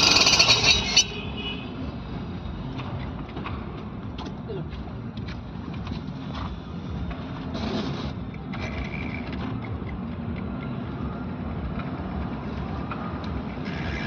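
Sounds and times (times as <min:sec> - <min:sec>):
alternator mechanical noise: 0:00.0 - 0:01.2.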